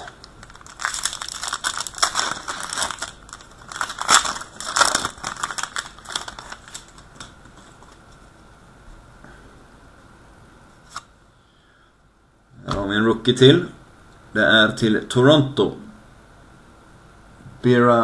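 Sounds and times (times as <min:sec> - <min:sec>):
foil wrapper crinkling and tearing: 0:00.0 - 0:08.1.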